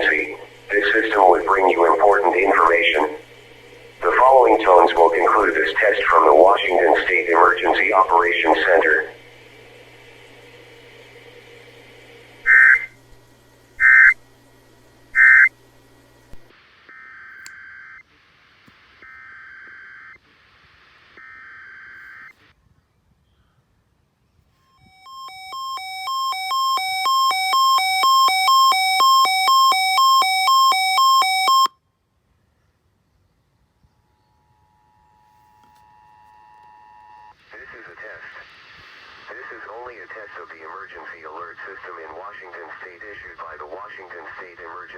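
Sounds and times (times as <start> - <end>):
screeching data bursts: 0.0 - 10.0, 12.4 - 13.0, 13.8 - 14.2, 15.1 - 15.6, 19.0 - 20.2, 21.0 - 22.3, 24.9 - 31.7.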